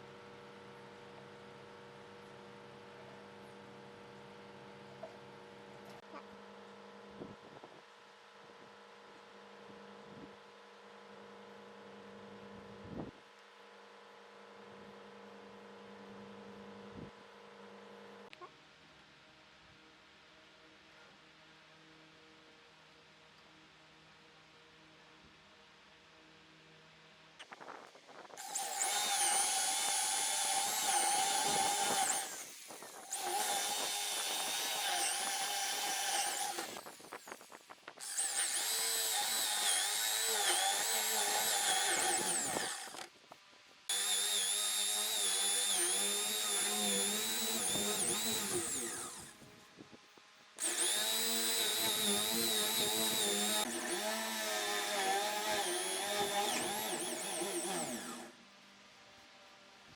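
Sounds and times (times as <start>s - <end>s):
power tool motor whining: 28.4s - 43.1s, 43.9s - 49.4s, 50.6s - 58.4s.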